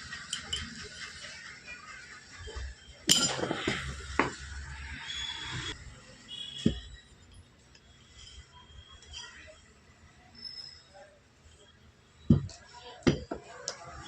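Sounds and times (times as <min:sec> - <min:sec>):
metal clinking and clattering: 0:00.1 - 0:01.2, 0:03.1 - 0:04.4
metal clanking: 0:03.1 - 0:04.4.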